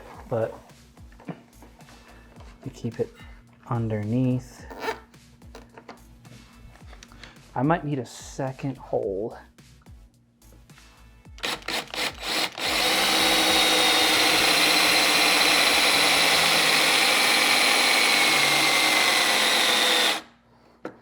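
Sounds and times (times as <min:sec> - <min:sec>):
cordless drill whine: 0:11.4 - 0:20.3.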